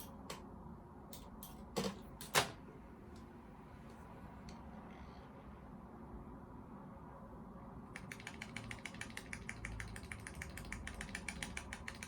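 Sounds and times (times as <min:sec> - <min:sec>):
keyboard key tapped rapidly: 0:08.0 - 0:12.0.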